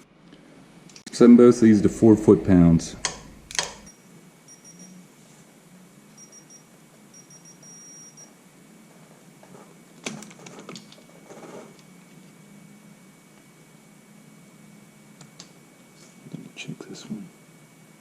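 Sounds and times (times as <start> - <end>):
torque wrench clicking: 3.0 - 3.9
short high-pitched beeps: 3.9 - 5.0, 6.2 - 8.3.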